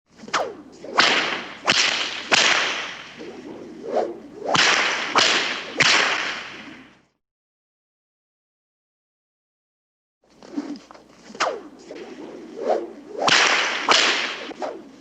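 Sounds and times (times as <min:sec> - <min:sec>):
whip cracks: 0:00.1 - 0:07.1, 0:10.5 - 0:15.0.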